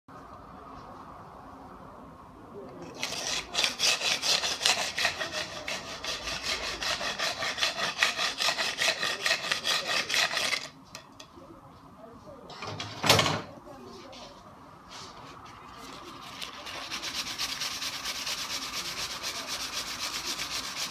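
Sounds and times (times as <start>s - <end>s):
hand tool strokes on reed: 2.8s - 10.7s, 16.2s - 20.9s.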